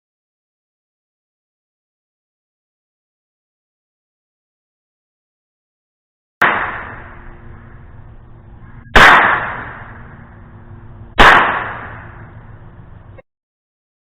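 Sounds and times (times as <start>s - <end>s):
pistol shots with ringing tail: 6.4s - 7.9s, 8.8s - 12.6s.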